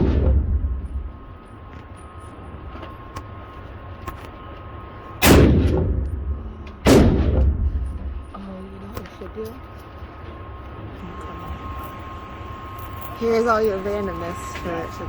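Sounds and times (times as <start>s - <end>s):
gunshots ringing out: 0.0s - 1.1s, 5.2s - 8.1s.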